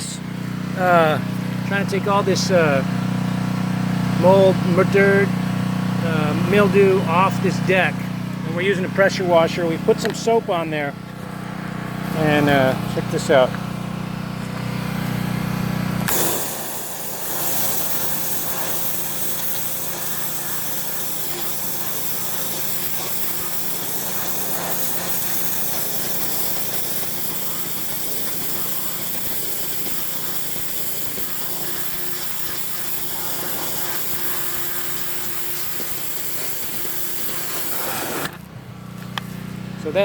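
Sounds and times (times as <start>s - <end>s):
pressure washer motor humming: 0.0s - 40.0s
high-pressure water jet hissing: 16.1s - 38.4s.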